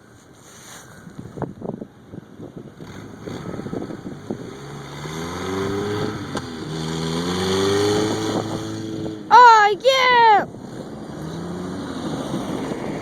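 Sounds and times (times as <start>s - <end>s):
car engine revving: 2.8s - 9.3s, 10.5s - 13.0s.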